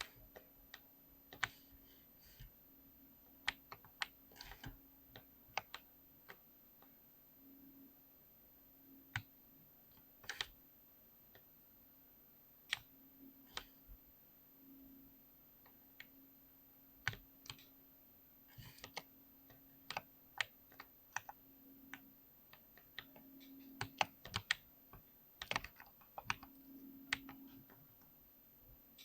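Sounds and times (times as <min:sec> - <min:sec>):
faint steady hum: 0:00.0 - 0:29.0
mechanical keyboard keystrokes: 0:03.4 - 0:06.4, 0:09.9 - 0:10.6, 0:17.0 - 0:17.7, 0:18.6 - 0:24.6, 0:25.4 - 0:27.8.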